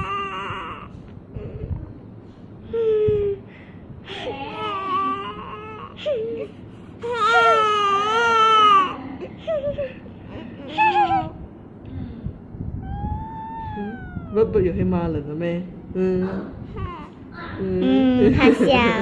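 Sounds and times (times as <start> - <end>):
baby fussing and crying: 4.1 - 9.0, 12.8 - 14.4.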